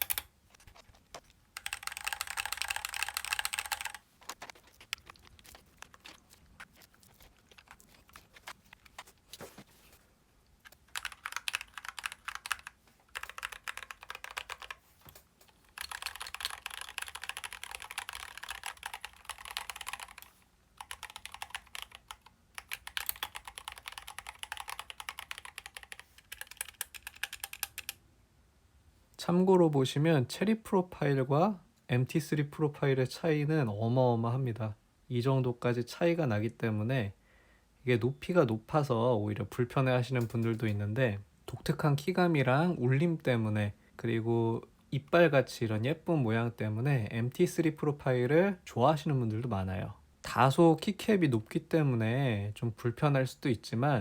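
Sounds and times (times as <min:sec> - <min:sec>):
mechanical keyboard typing: 0:00.0 - 0:00.3, 0:00.9 - 0:06.2, 0:10.7 - 0:28.0.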